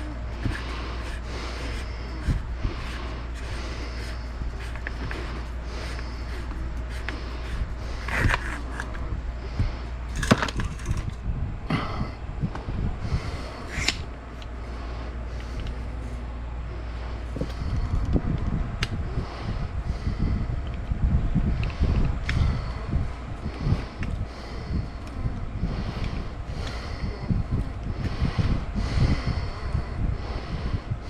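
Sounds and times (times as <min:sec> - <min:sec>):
steady low hum: 0:00.0 - 0:31.0
rifle parts clicking and knocking: 0:10.1 - 0:11.2.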